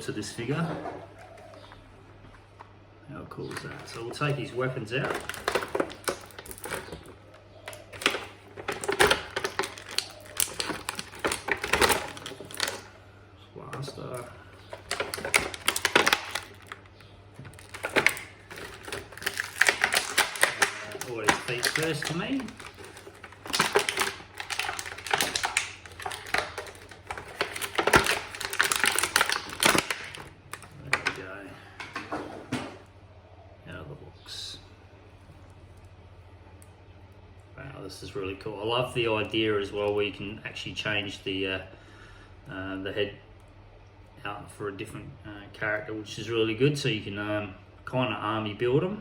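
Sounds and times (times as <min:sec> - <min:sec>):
plastic packaging clicks and knocks: 0:03.5 - 0:12.9, 0:13.8 - 0:31.2.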